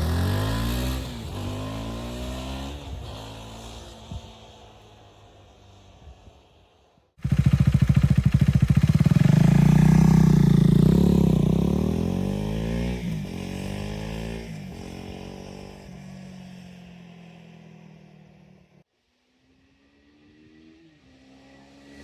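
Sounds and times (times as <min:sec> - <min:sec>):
motorcycle engine revving: 0:00.0 - 0:04.8, 0:07.2 - 0:17.8.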